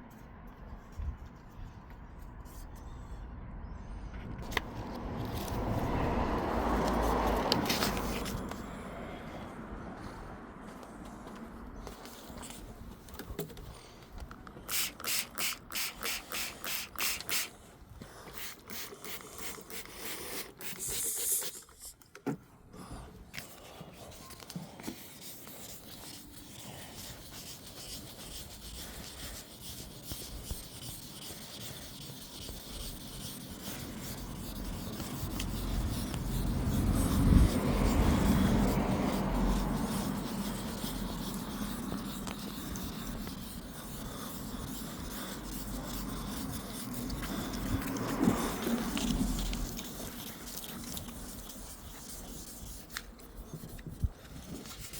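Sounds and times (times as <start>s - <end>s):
sandpaper rubbing paintwork: 5.0s - 8.6s, 14.6s - 22.0s, 22.9s - 54.9s.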